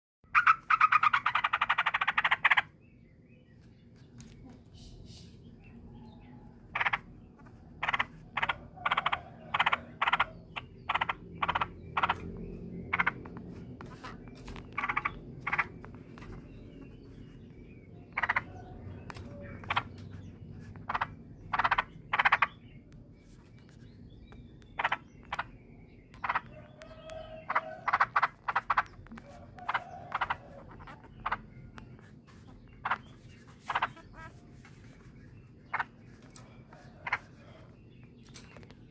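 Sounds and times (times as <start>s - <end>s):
bird harsh rasping calls: 0.3s - 2.8s, 6.7s - 7.1s, 7.8s - 16.2s, 18.1s - 18.7s, 20.7s - 22.7s, 24.6s - 31.5s, 32.7s - 35.0s.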